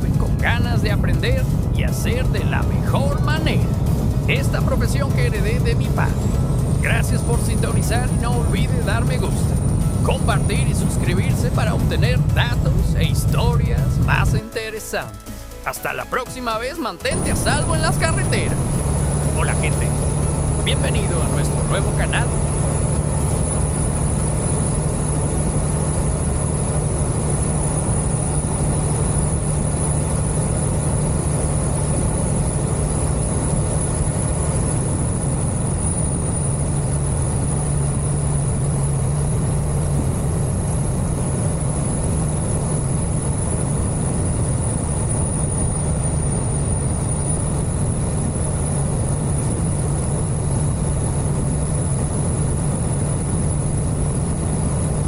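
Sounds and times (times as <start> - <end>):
diesel truck engine droning: 0.0 - 55.0.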